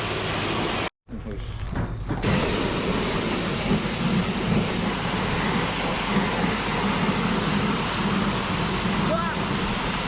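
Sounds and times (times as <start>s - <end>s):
pressure washer spray hiss: 2.2s - 10.0s.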